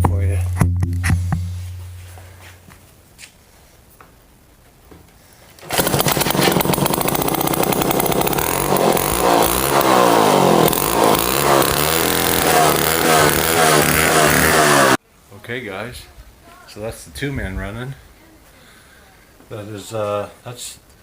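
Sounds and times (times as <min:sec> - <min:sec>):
chainsaw engine running loudly: 0:05.7 - 0:15.0.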